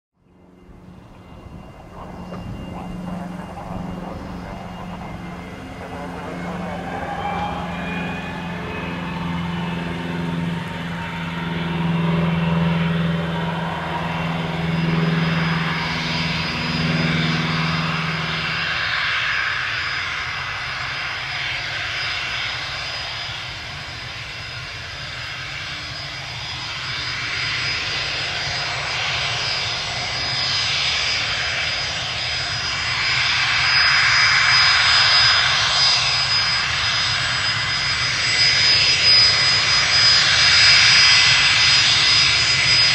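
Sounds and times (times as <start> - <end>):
low droning hum: 0.2 - 19.1
jet engines whining and roaring: 0.2 - 42.9.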